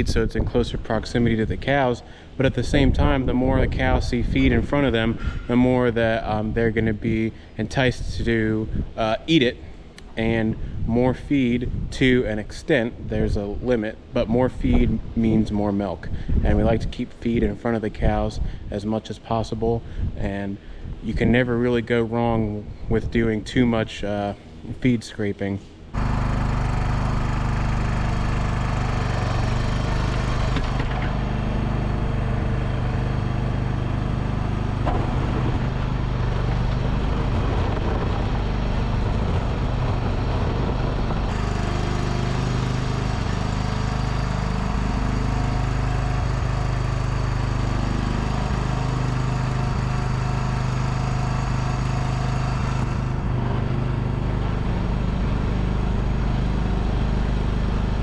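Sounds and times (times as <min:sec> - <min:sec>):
machine engine running: 0:25.9 - 0:58.0.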